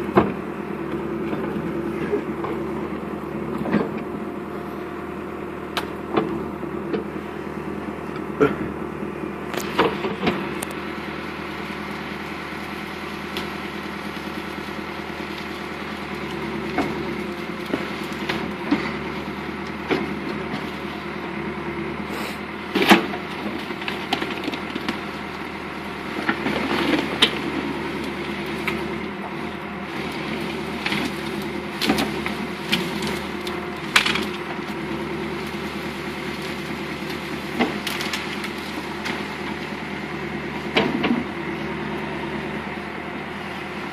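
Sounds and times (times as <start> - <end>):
backhoe diesel engine running: 0.0 - 43.9
branches cracking and snapping: 9.5 - 21.0, 22.8 - 42.6.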